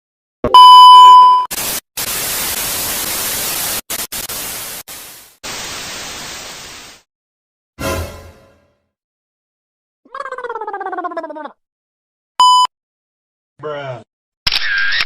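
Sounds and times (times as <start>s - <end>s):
hissing static: 1.5s - 7.0s.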